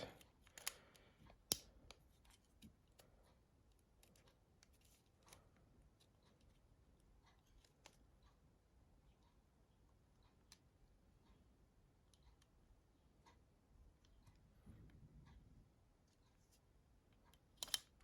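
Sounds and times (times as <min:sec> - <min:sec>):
small plastic parts clicking: 0:00.0 - 0:03.1, 0:03.7 - 0:05.4, 0:17.2 - 0:18.0.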